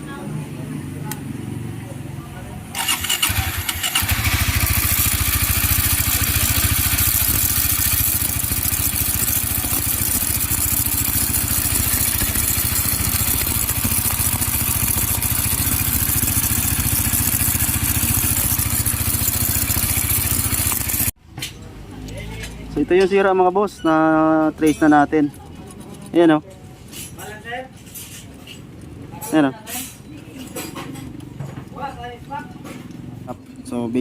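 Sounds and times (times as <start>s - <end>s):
motorcycle engine running: 1.2s - 21.2s
gritty grinding noise: 4.0s - 21.1s.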